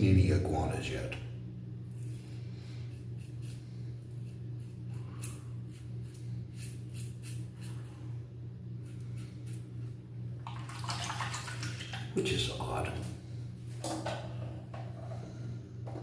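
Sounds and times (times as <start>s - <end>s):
razor scraping stubble: 1.9s - 8.0s, 8.8s - 10.0s
low hum: 11.4s - 16.0s.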